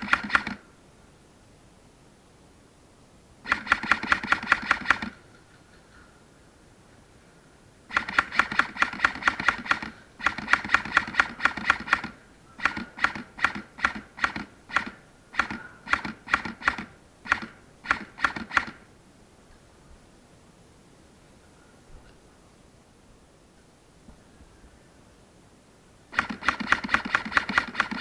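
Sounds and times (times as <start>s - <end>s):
airsoft guns firing: 0.0s - 0.6s, 3.5s - 5.2s, 7.9s - 18.9s, 26.1s - 28.0s.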